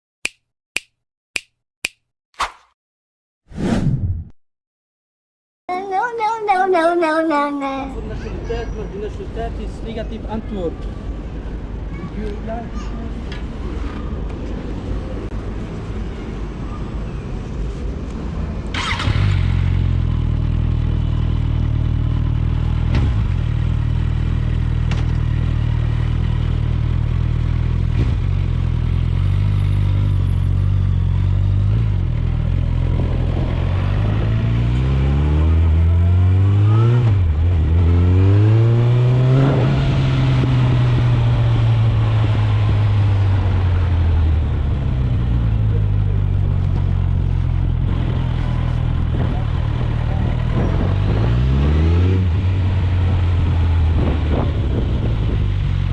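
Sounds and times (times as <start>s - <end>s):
motorcycle engine revving: 18.6s - 55.9s.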